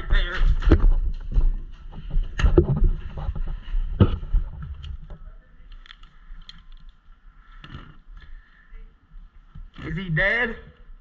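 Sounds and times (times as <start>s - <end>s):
rustling and scuffling: 0.0s - 5.1s.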